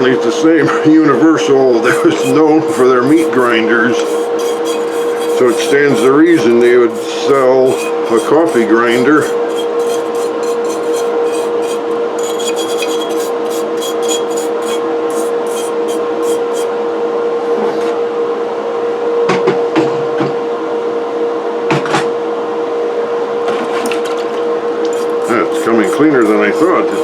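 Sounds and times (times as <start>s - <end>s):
brush scrubbing metal parts: 1.8s - 16.7s, 24.9s - 27.0s.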